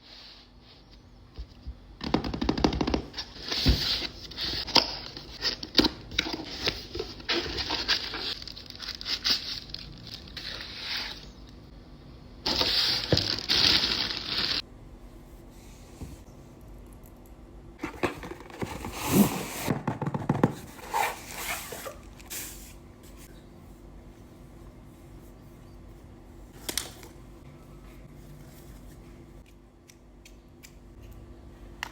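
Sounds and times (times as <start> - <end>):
objects scraping and knocking: 17.8 - 21.9.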